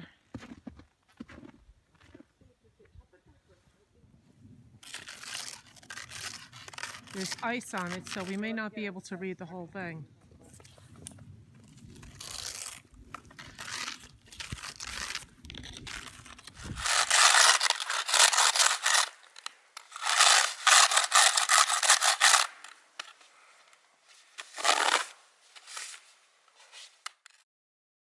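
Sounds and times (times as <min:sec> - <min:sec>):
scraping snow and ice off stone: 0:04.7 - 0:09.2, 0:10.4 - 0:27.4.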